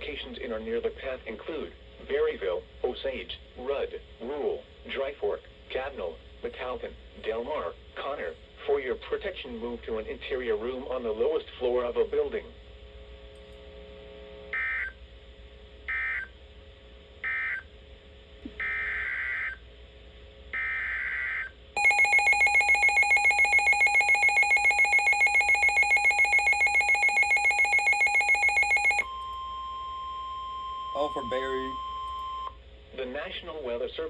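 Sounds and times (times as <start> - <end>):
rapidly pulsing electronic beep: 21.4 - 29.3.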